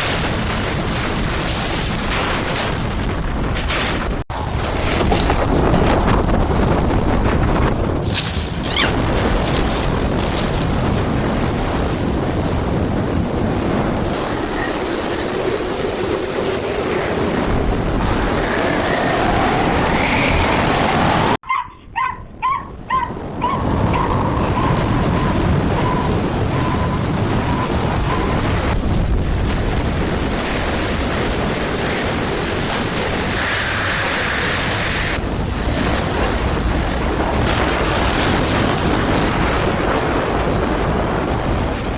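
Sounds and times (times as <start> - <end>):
storm wind buffeting microphone: 0.0 - 41.9
short high-pitched yips: 21.4 - 24.7.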